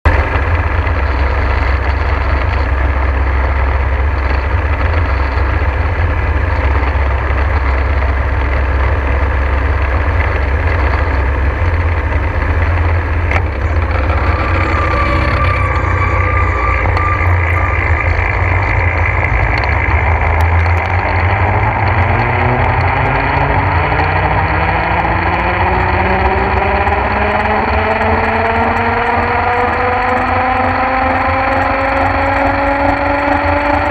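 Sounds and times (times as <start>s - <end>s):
gyrocopter engine droning: 0.1s - 33.9s
thin high whine: 10.8s - 30.7s.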